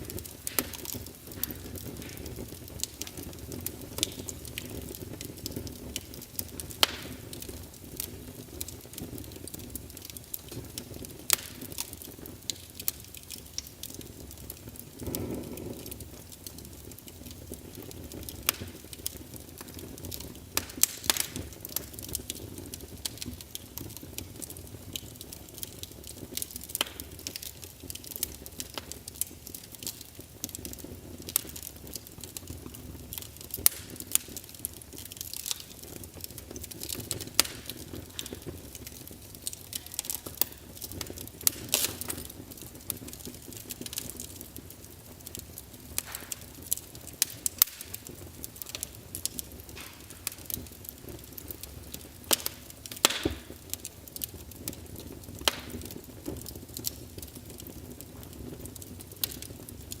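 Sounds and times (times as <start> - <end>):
fire hissing: 0.0 - 60.0
wood fire crackling: 0.0 - 60.0.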